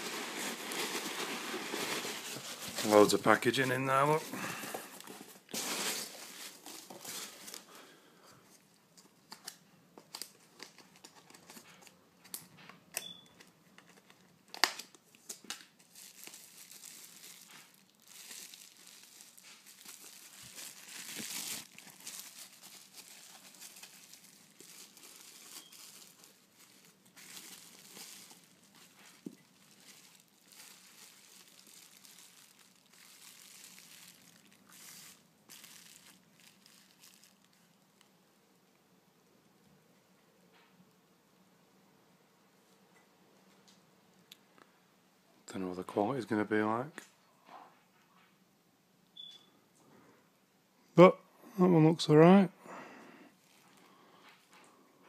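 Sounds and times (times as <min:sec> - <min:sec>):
packing material crinkling: 0:00.0 - 0:07.8, 0:13.8 - 0:38.1, 0:53.3 - 0:54.7.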